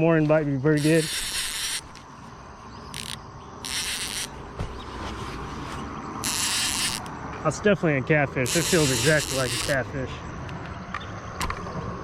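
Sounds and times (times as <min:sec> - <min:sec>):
fishing reel drag buzzing: 0:00.8 - 0:02.0, 0:02.9 - 0:04.4, 0:06.2 - 0:07.1, 0:08.4 - 0:09.8.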